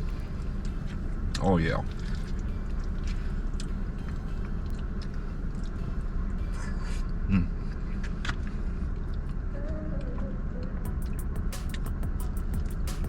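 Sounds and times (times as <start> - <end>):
low engine-like rumble: 0.0 - 13.0
person humming appreciatively: 7.3 - 7.6.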